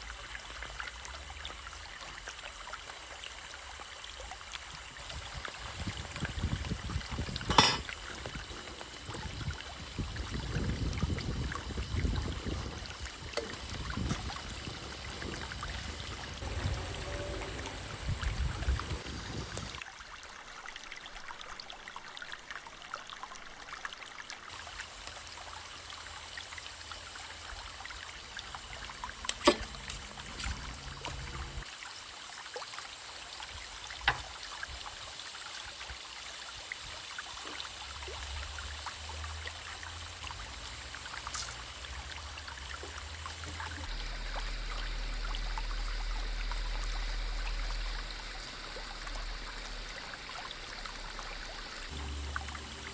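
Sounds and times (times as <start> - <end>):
food hissing in a pot: 4.6 - 19.8, 24.5 - 43.9, 51.9 - 52.9.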